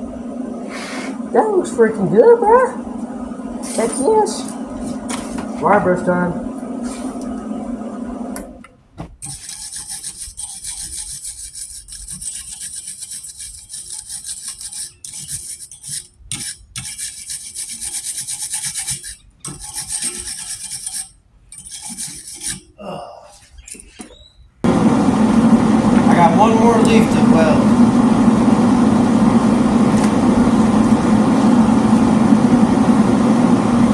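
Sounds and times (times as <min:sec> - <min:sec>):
wire brush scraping metal: 0:09.2 - 0:24.0.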